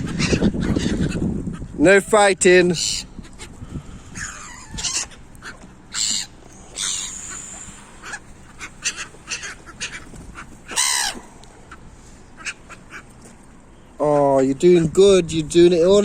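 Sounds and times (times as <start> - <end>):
gulls and ducks calling: 0.0 - 14.0.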